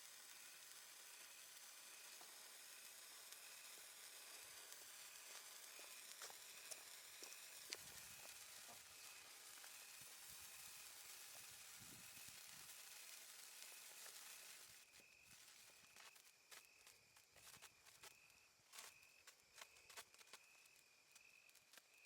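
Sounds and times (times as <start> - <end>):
sparkler crackles: 0.0 - 22.0
sparkler fizzing: 0.0 - 22.0.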